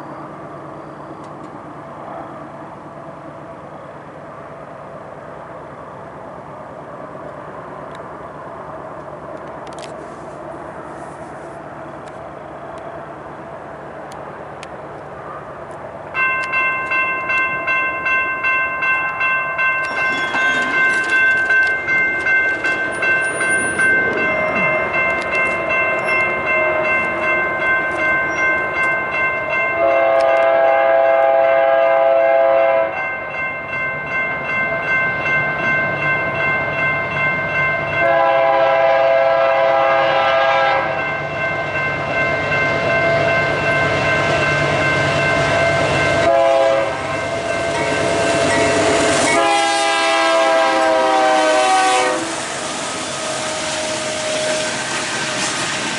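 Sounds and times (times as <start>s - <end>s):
train rumble: 0.0s - 55.9s
railroad crossing bell ringing: 16.1s - 55.7s
locomotive air horn blasts: 29.8s - 33.0s, 38.0s - 41.0s, 46.2s - 47.4s, 49.3s - 52.6s.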